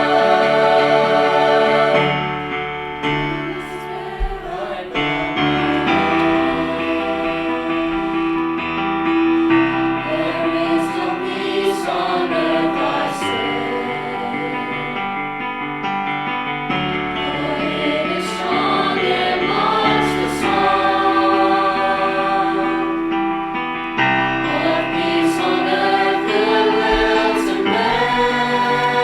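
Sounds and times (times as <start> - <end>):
choir singing: 0.0 - 16.1, 16.8 - 29.0
instrumental accompaniment: 0.0 - 29.0.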